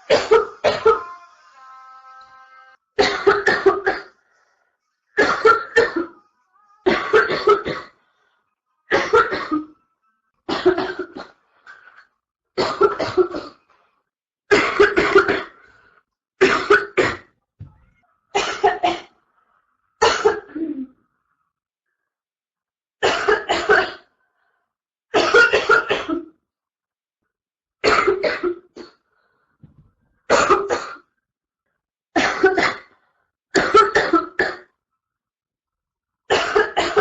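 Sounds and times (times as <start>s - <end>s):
girl coughing: 0.1s - 1.0s, 3.0s - 4.2s, 5.2s - 6.2s, 6.8s - 8.0s, 8.9s - 9.8s, 10.5s - 11.4s, 12.6s - 13.6s, 14.5s - 15.6s, 16.4s - 17.3s, 18.4s - 19.1s, 20.0s - 21.0s, 23.0s - 24.1s, 25.2s - 26.3s, 27.8s - 29.0s, 30.3s - 31.1s, 32.2s - 32.9s, 33.6s - 34.7s, 36.3s - 37.0s.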